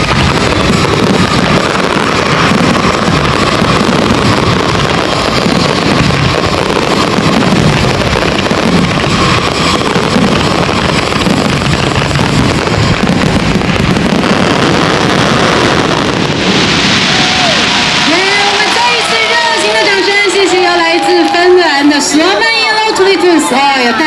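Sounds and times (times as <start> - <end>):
wind buffeting microphone: 0.0 - 18.1.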